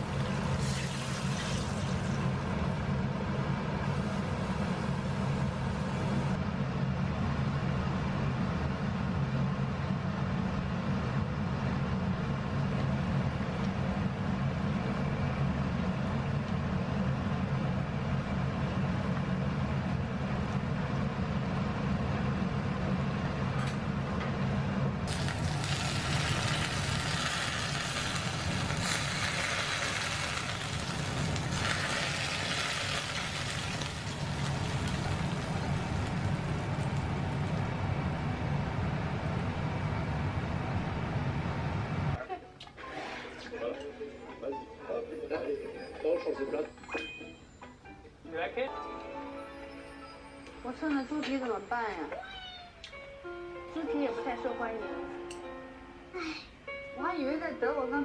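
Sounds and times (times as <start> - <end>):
low mechanical hum: 0.0 - 48.2
loud even hiss: 25.1 - 36.9.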